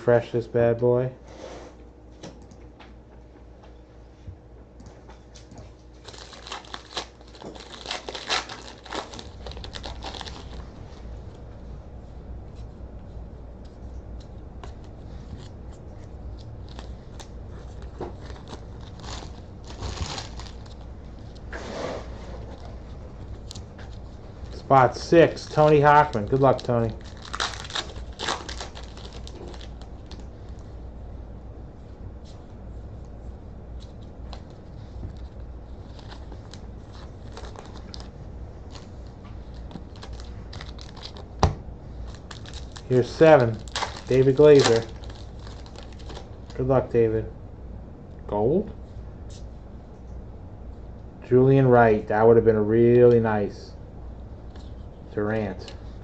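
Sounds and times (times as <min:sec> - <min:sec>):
steady low hum: 0:00.0 - 0:56.0
trading cards being handled: 0:05.2 - 0:11.4, 0:22.4 - 0:30.6, 0:33.8 - 0:46.6
pack wrapper crinkling: 0:06.0 - 0:11.1, 0:14.7 - 0:21.5, 0:22.6 - 0:30.6, 0:33.8 - 0:46.6.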